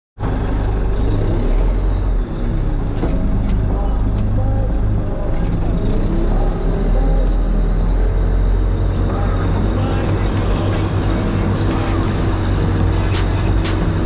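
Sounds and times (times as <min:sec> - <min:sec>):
diesel earthmoving machine running: 0:00.2 - 0:14.0
sharp clicks: 0:13.1 - 0:14.0.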